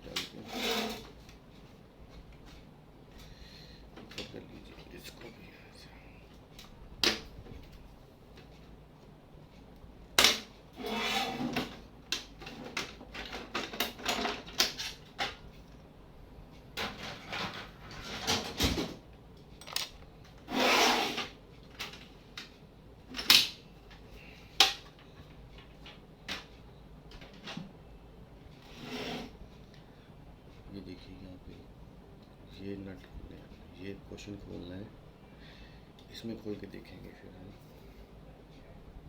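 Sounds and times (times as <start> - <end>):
scraping and rattling: 0.1 - 1.3.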